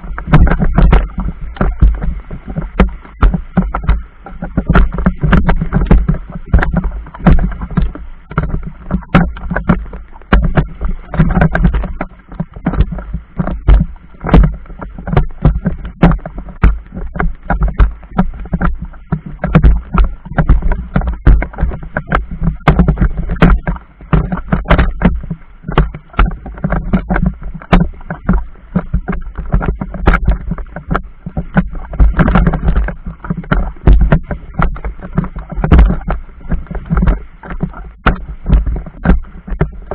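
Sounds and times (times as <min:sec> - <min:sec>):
water slapping against boat hull: 0:00.0 - 0:39.9.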